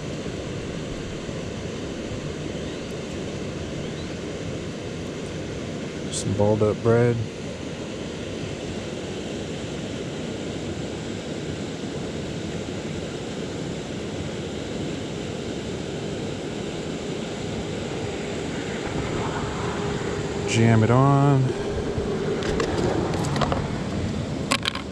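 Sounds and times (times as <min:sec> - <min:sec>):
wind noise on microphone: 0:16.8 - 0:24.9.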